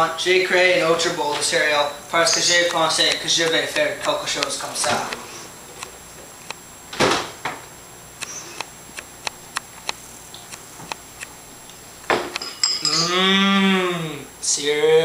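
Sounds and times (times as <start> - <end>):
metal spoon clinking against bowl: 12.4 - 13.1
person making drawn-out vocal sound: 12.9 - 14.3.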